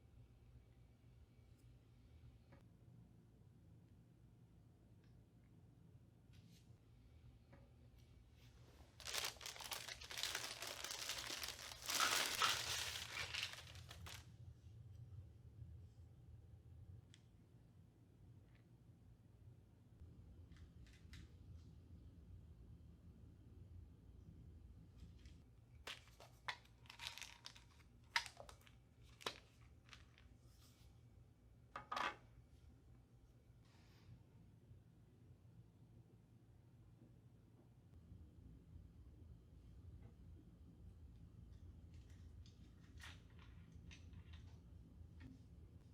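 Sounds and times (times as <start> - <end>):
crinkling crumpling crackles: 8.9 - 14.2, 25.9 - 30.3.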